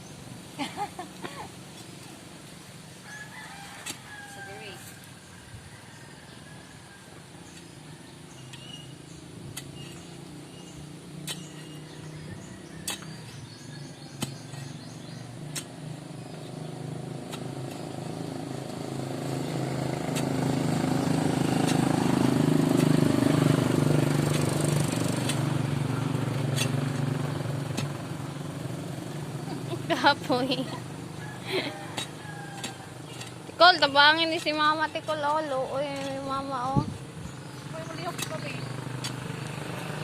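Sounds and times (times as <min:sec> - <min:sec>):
motor engine running: 0:08.6 - 0:40.0.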